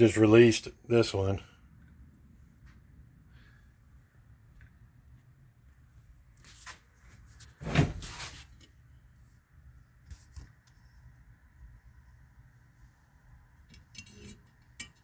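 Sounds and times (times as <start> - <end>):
metal scrape: 13.7 - 15.0.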